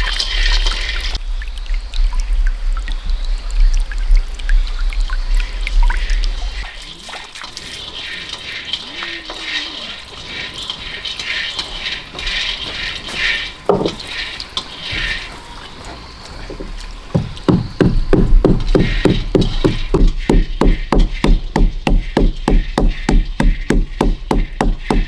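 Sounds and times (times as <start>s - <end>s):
water running and splashing: 0.0s - 25.0s
sharp knocking strikes: 17.2s - 25.0s.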